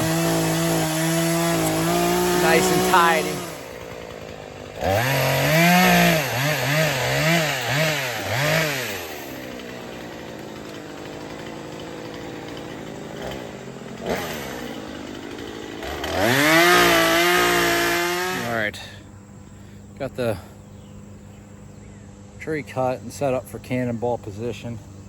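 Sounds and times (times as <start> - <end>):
chainsaw revving: 0.0 - 18.8.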